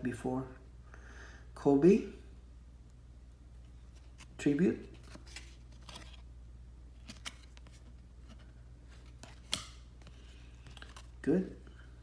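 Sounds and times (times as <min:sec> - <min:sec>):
low steady hum: 0:00.0 - 0:12.0
cards sliding rustle: 0:03.7 - 0:06.3, 0:07.0 - 0:11.2
cards clicking: 0:09.0 - 0:11.1.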